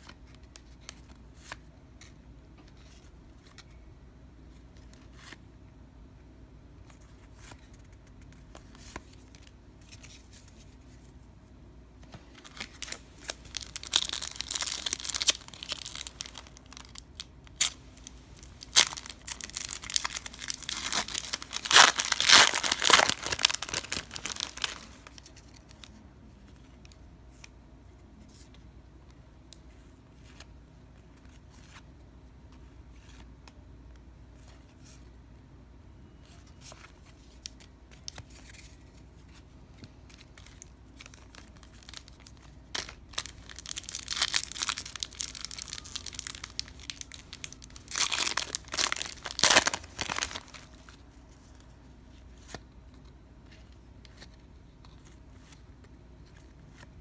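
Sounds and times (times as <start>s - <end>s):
card pack wrapper tearing and crinkling: 12.4s - 25.9s, 40.1s - 51.0s.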